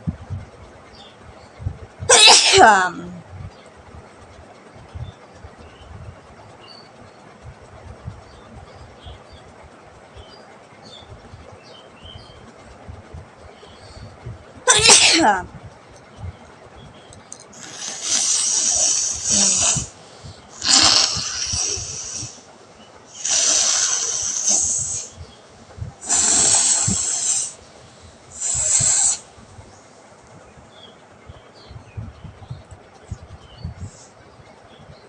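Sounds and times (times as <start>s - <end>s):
person blowing nose: 17.6s - 19.9s, 20.6s - 22.4s, 23.2s - 25.1s, 26.0s - 27.6s, 28.4s - 29.2s.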